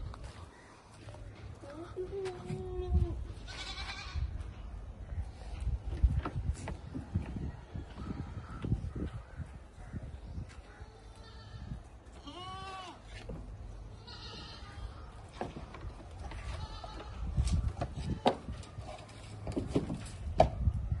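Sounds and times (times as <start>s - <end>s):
goat bleating: 3.4s - 4.3s, 11.1s - 13.2s, 13.9s - 15.0s, 16.4s - 17.3s.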